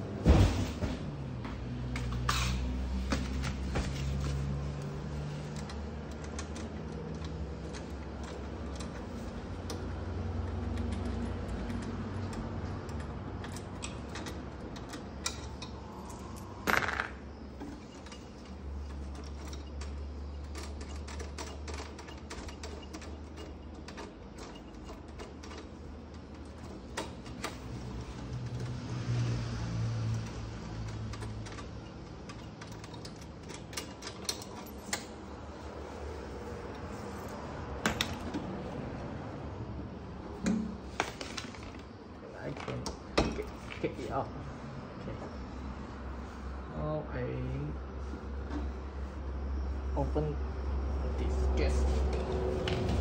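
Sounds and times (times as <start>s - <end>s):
hand tools clicking and knocking: 1.9s - 28.7s, 30.2s - 35.2s.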